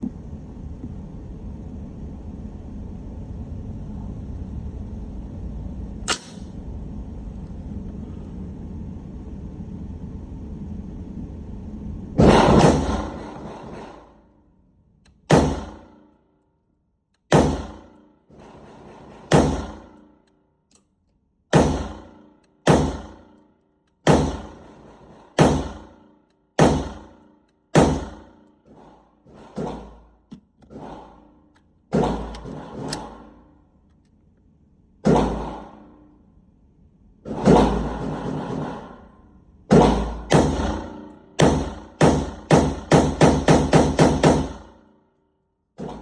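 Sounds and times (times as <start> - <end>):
gunshots with echo: 12.2 - 14.0, 15.3 - 16.0, 17.3 - 18.0, 18.6 - 20.1, 21.5 - 23.4, 24.0 - 30.1, 37.3 - 44.8.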